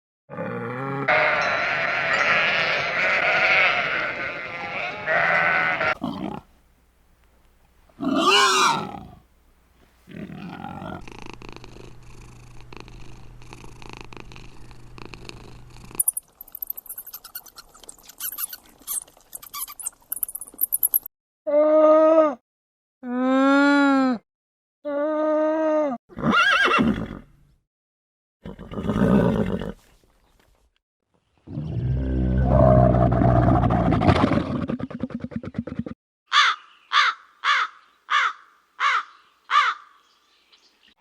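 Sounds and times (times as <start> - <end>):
farm animal calls: 1.1 - 6.4, 8.0 - 9.2
steady low hum: 10.7 - 16.0.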